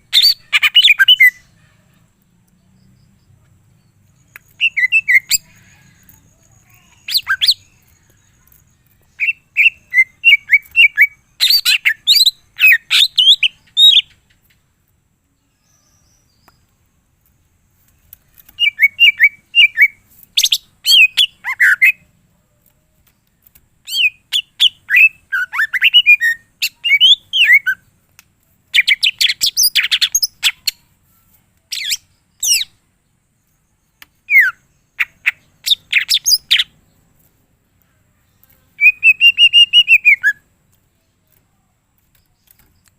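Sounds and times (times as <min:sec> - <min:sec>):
bird singing chirps and whistles: 0:00.0 - 0:01.6, 0:04.1 - 0:05.7, 0:06.5 - 0:08.3, 0:09.0 - 0:14.2, 0:18.4 - 0:22.1, 0:23.8 - 0:27.9, 0:28.7 - 0:30.8, 0:31.7 - 0:32.8, 0:33.4 - 0:36.8, 0:38.8 - 0:40.5.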